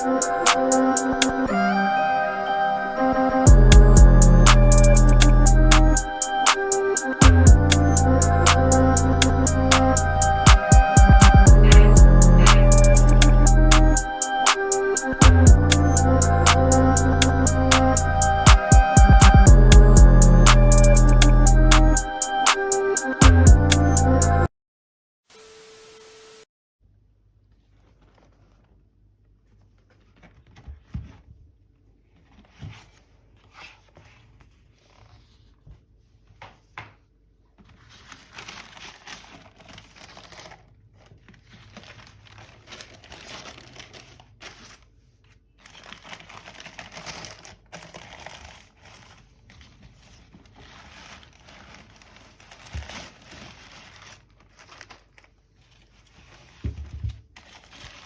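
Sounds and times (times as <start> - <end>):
wrapping crinkling: 37.5 - 58.0.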